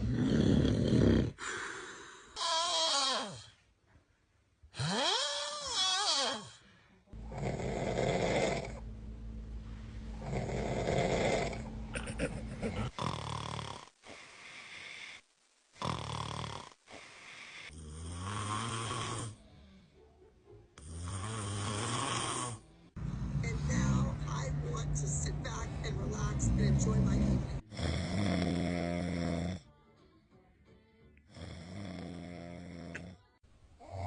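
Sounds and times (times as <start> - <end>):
man snoring: 0.0 - 3.5, 4.8 - 6.5, 7.2 - 8.8, 10.2 - 15.2, 15.8 - 19.6, 20.8 - 23.6, 27.2 - 29.7, 31.3 - 33.2, 33.8 - 34.0.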